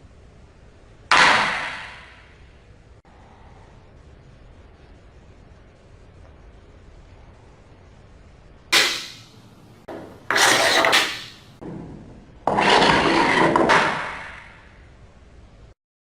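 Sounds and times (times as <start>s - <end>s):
scraping and rubbing handling noise: 8.8s - 11.6s, 12.5s - 14.3s.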